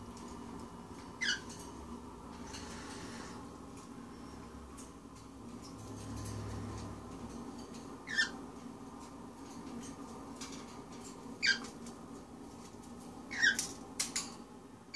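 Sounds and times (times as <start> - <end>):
bird chirping: 1.2 - 1.6, 8.0 - 8.4, 11.4 - 11.7, 13.3 - 13.7.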